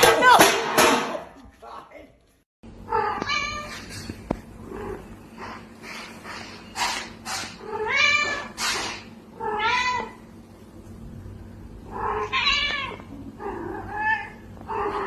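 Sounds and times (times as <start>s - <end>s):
cat meowing: 9.4s - 10.2s, 11.9s - 15.0s.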